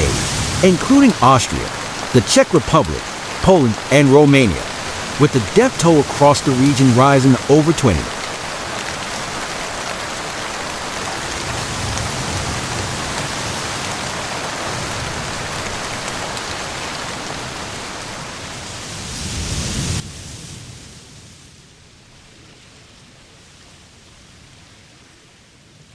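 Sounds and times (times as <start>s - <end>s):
heavy rain falling: 0.0s - 20.0s.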